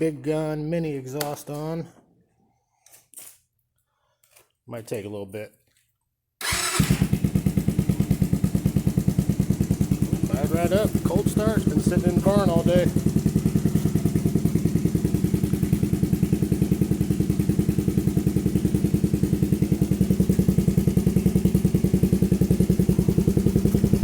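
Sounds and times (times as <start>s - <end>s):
small engine idling: 6.4s - 24.0s.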